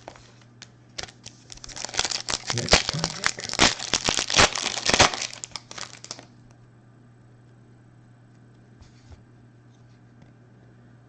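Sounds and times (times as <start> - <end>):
faint steady hum: 0.0 - 11.0
foil wrapper crinkling and tearing: 1.0 - 6.4.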